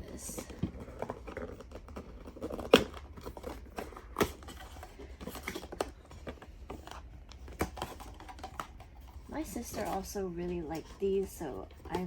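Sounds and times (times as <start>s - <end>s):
cardboard packaging clicks and taps: 0.4s - 8.8s.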